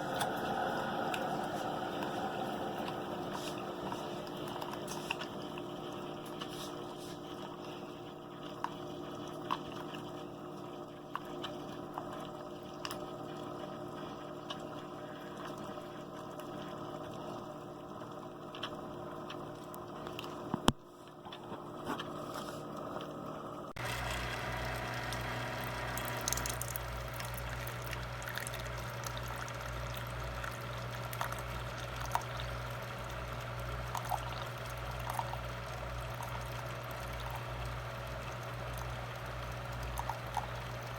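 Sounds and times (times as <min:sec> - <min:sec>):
liquid running into cup: 0:00.0 - 0:07.7, 0:23.8 - 0:40.9
coffee maker humming: 0:00.0 - 0:20.8, 0:21.6 - 0:40.9
pulsing pump: 0:23.8 - 0:32.2.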